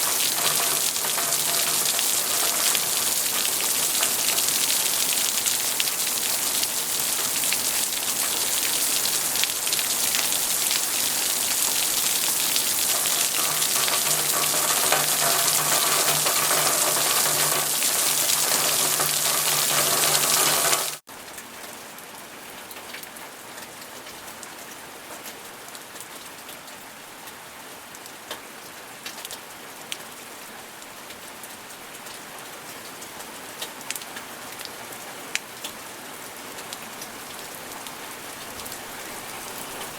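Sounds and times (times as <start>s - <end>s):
heavy rain hissing: 0.0s - 21.0s
raindrops ticking: 0.0s - 21.0s.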